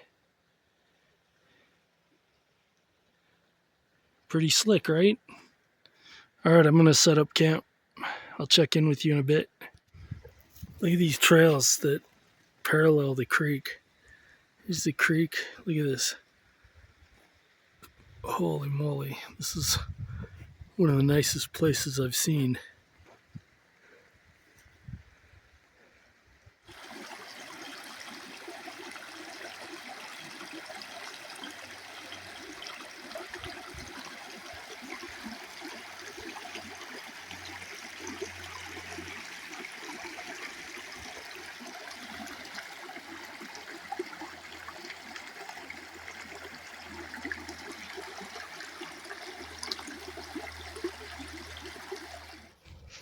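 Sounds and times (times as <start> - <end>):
stream rushing over rocks: 26.7 - 52.4.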